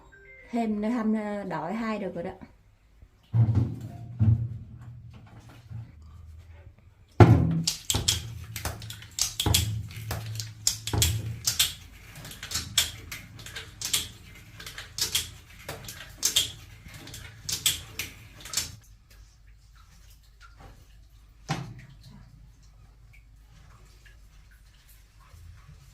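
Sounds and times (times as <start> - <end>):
hard objects knocking and clattering: 3.4 - 5.3.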